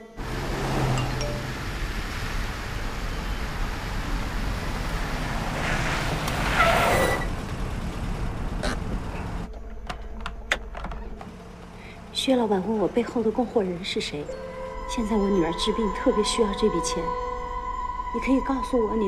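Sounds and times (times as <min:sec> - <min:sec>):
road traffic noise: 0:00.0 - 0:17.1.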